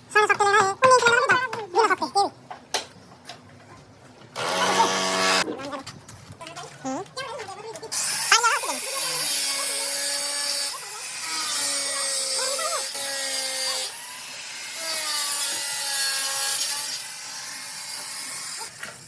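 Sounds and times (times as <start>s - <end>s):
sawing on a pipe: 4.4s - 5.4s, 8.0s - 18.8s.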